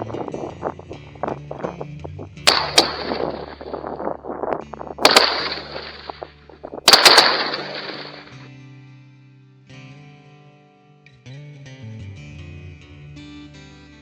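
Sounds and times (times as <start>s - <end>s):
shotgun shots echoing: 2.5s - 4.0s, 4.9s - 8.5s.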